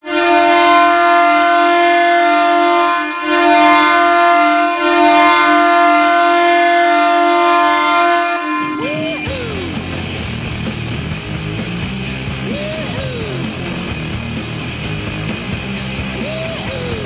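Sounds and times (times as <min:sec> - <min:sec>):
arena goal horn: 0:00.0 - 0:09.3.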